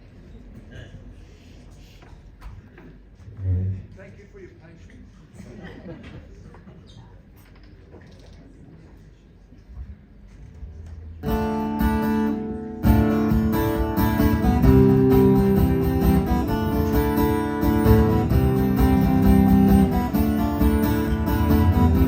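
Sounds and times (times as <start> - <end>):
guitar chord ringing: 11.2 - 22.0
live band with strummed guitar: 11.2 - 22.0.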